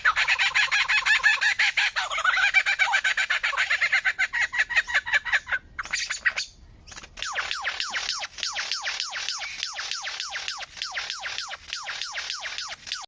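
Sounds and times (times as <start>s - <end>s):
bird calling rapid sharp notes: 5.8s - 13.0s.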